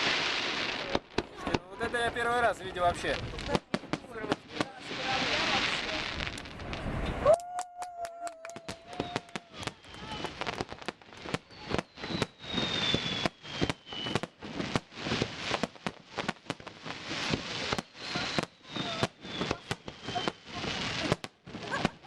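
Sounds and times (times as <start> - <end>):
fireworks crackling: 0.0 - 22.0
falling firework whistles: 8.2 - 22.0.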